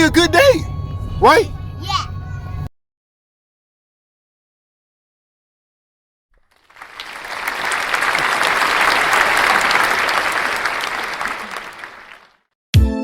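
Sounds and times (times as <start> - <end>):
crowd applause: 6.4 - 12.4.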